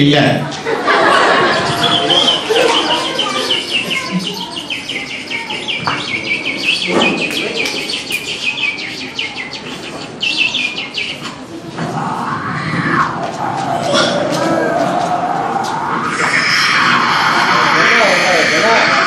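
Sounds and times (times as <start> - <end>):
person imitating bird chirps: 1.6 - 5.9, 11.9 - 19.0.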